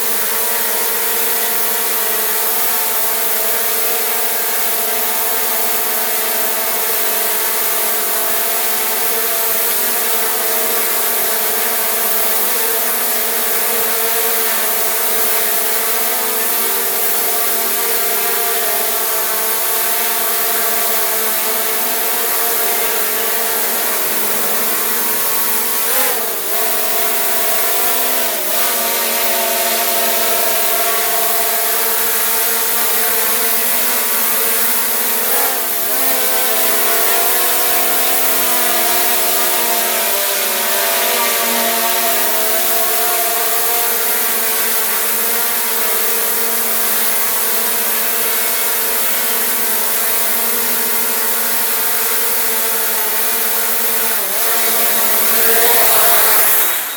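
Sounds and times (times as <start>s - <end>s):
drone propellers whining: 54.5s - 56.9s.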